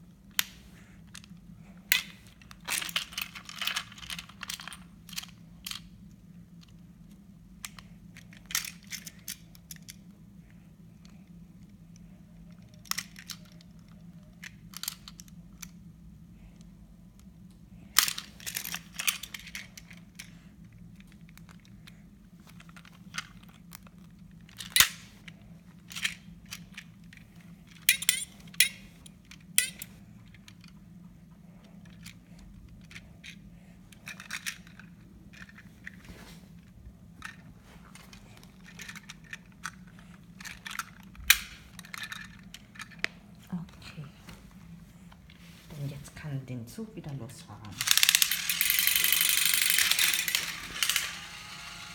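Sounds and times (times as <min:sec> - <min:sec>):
steady low hum: 0:00.0 - 0:51.9
plastic toy parts clicking: 0:00.3 - 0:05.9, 0:07.6 - 0:10.1, 0:11.0 - 0:15.8, 0:18.0 - 0:20.3, 0:21.0 - 0:30.8, 0:31.8 - 0:36.0, 0:38.0 - 0:43.2, 0:47.7 - 0:51.9.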